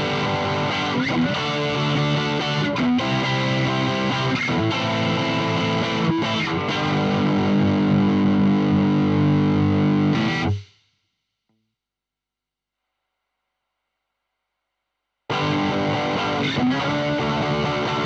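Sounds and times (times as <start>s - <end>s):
distorted electric guitar chords: 0.0s - 10.6s, 15.3s - 18.0s.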